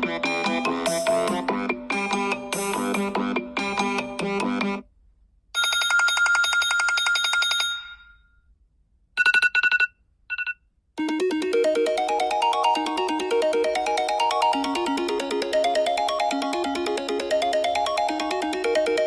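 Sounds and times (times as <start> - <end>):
melodic ringtone: 0.0 - 4.8, 9.2 - 19.0.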